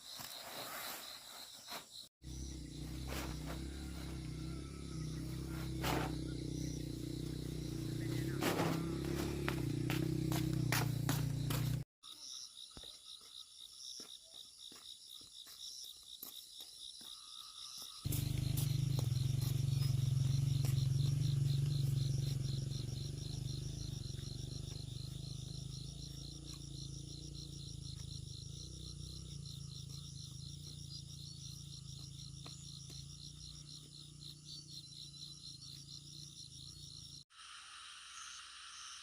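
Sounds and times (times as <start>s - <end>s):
insects chirping: 0.0s - 39.0s.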